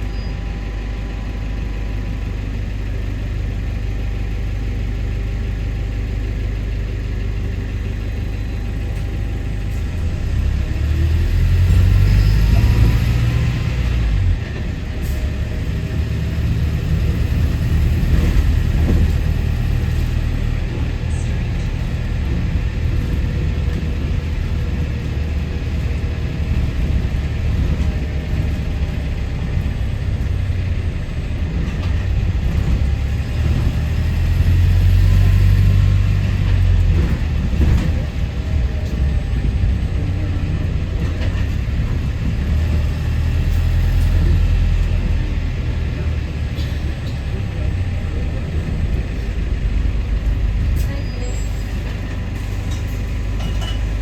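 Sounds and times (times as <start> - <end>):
bus engine drone: 0.0 - 54.0
road noise: 0.0 - 54.0.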